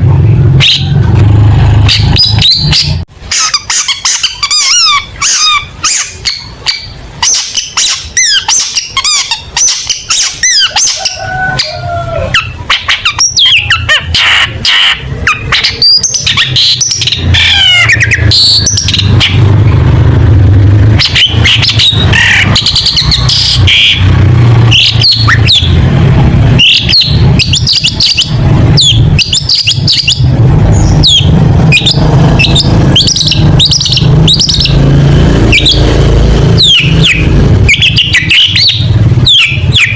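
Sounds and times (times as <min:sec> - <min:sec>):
bird singing: 0:01.8 - 0:20.0, 0:20.8 - 0:39.9
low hum: 0:16.5 - 0:39.7.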